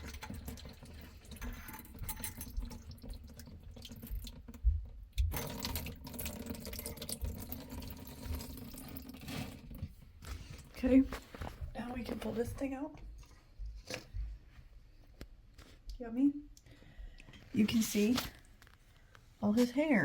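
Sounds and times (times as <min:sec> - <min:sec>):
water trickling in drain: 0:00.0 - 0:10.0.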